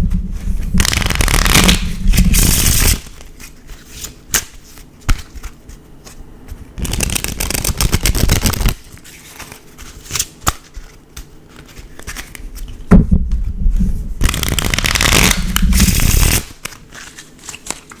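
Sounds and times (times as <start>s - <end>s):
playing cards being shuffled: 0.4s - 12.8s, 14.2s - 18.0s.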